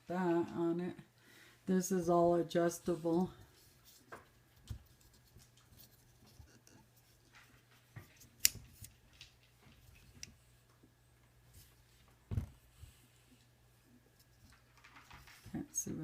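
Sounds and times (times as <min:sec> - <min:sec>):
dull thump: 0:12.3 - 0:12.6.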